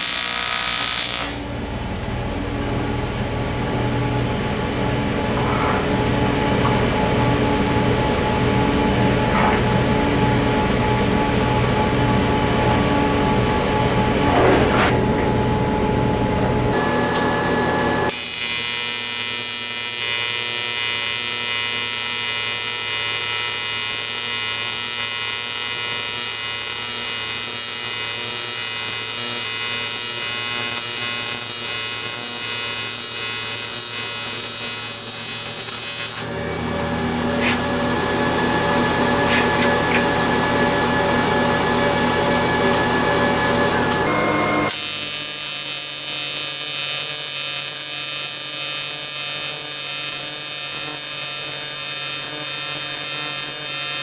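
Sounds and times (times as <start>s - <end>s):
welding arc buzzing: 0.0s - 1.6s, 2.8s - 54.0s
machine hum: 0.6s - 18.2s, 34.3s - 44.8s.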